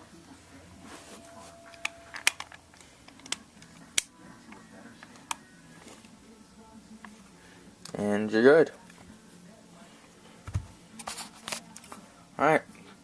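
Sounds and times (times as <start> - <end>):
plastic clicks and snaps: 1.8 - 5.4.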